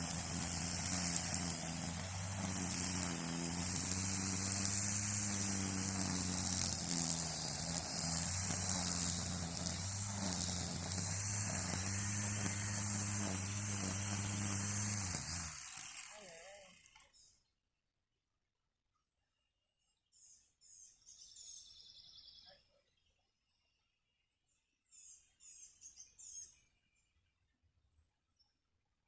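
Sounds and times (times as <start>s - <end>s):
string trimmer running: 0.0s - 17.2s.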